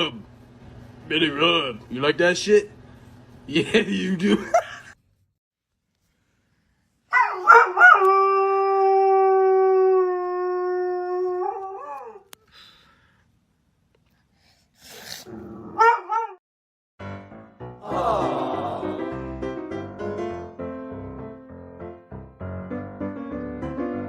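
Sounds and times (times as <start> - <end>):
dog howling and yipping: 7.1 - 12.3, 15.6 - 16.4.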